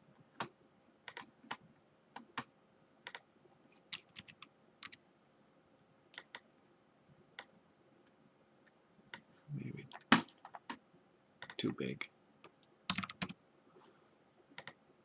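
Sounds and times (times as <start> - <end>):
computer keyboard typing: 1.1 - 1.3, 2.2 - 3.2, 3.9 - 5.0, 6.1 - 6.4, 12.9 - 13.4, 14.6 - 14.8.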